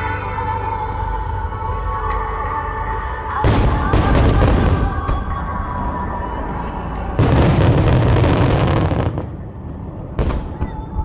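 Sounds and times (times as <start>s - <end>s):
music: 0.0s - 11.0s.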